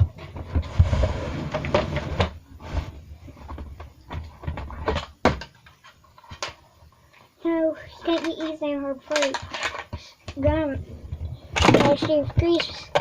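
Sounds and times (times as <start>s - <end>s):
objects knocking and clicking: 8.1s - 13.0s.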